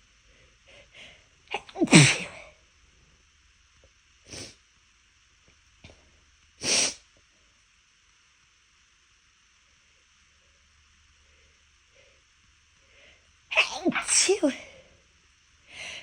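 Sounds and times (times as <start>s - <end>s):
person sneezing: 1.6s - 2.5s, 6.6s - 7.0s, 13.6s - 14.6s.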